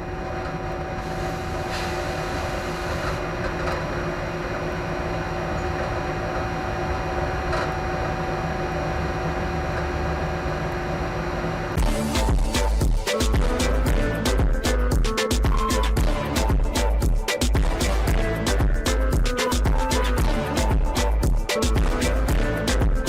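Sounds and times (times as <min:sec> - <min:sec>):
train rumbling: 0:00.0 - 0:12.0
steady hum: 0:00.0 - 0:23.0
music: 0:11.8 - 0:23.0.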